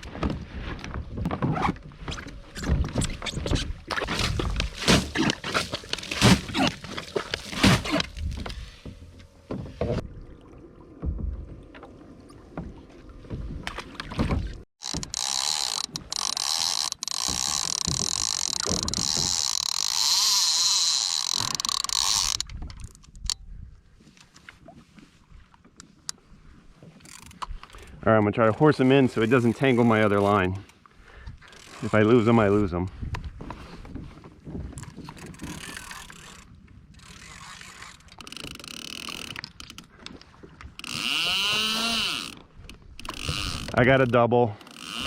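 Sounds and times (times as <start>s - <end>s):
fishing reel drag buzzing: 14.8s - 22.5s, 37.0s - 39.4s, 40.8s - 42.4s, 43.0s - 43.8s, 44.6s - 45.0s.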